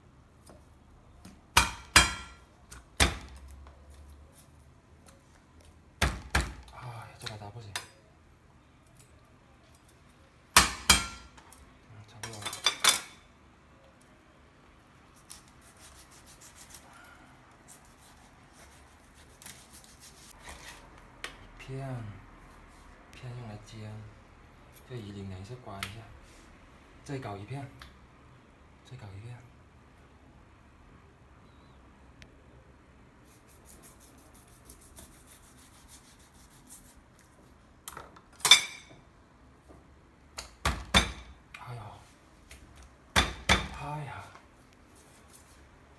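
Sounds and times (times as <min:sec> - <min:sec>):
kitchenware clattering: 0:12.2 - 0:13.3, 0:38.4 - 0:39.0, 0:40.7 - 0:41.4
knife scraping through fish: 0:15.3 - 0:16.9, 0:17.6 - 0:20.8
knife sawing through fish: 0:15.6 - 0:16.9.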